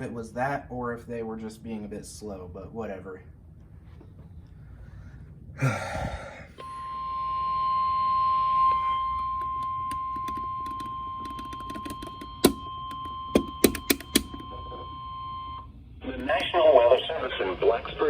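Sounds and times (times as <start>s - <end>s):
steady warning alarm beep: 6.6s - 16.5s.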